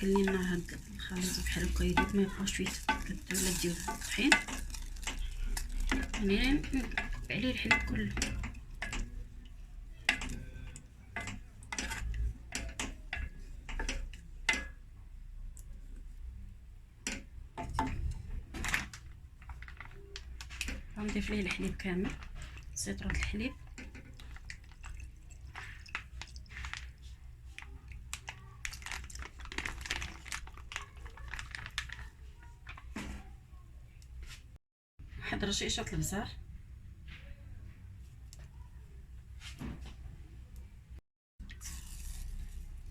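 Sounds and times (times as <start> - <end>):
utensil scraping a saucepan: 0.0 - 14.8, 41.5 - 42.9
utensil stirring sauce in pot: 0.0 - 33.0, 41.4 - 42.9.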